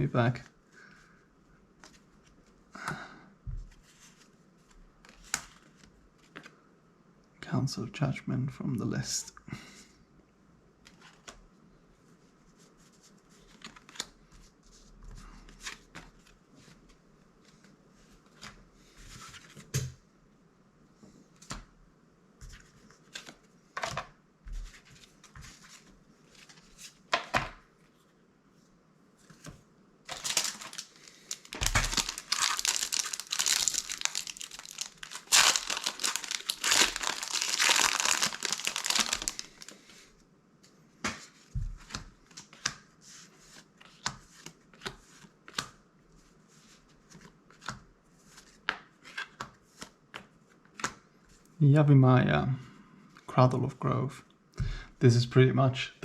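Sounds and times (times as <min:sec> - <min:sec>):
foil wrapper crinkling and tearing: 0:30.1 - 0:39.8.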